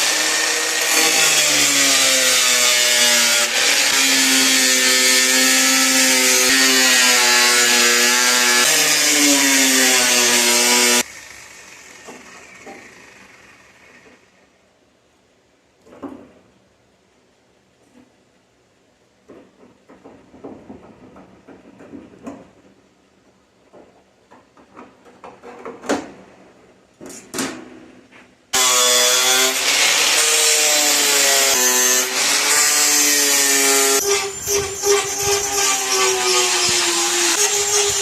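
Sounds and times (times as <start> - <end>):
power tool whining: 0.0 - 14.3, 28.6 - 38.0.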